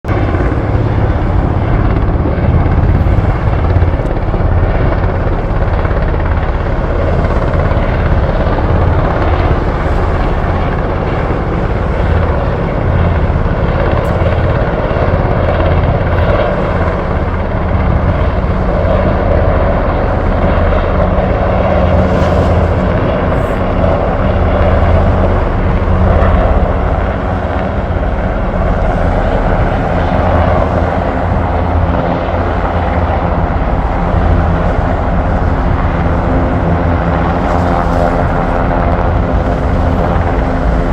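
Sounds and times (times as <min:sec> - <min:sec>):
engine whine: 0:00.0 - 0:40.9
helicopter rotor chopping: 0:00.0 - 0:40.9.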